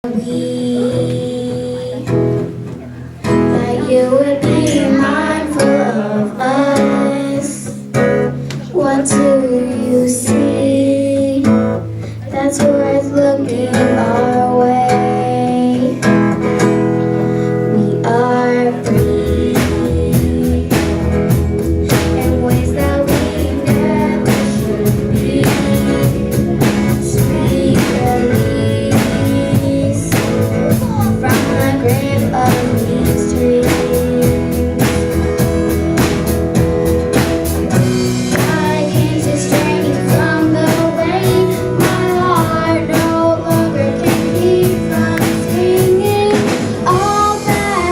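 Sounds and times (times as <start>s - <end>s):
guitar: 0.0s - 47.9s
live band playing: 0.0s - 47.9s
drums steady beat: 12.3s - 47.9s.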